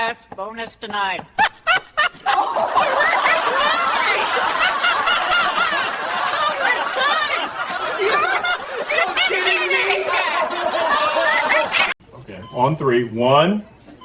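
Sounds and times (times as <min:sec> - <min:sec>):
crowd laughing: 0:01.4 - 0:12.0.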